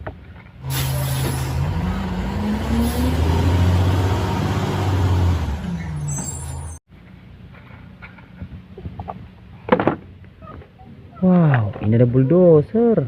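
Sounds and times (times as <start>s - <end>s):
truck engine revving: 0.6s - 6.8s.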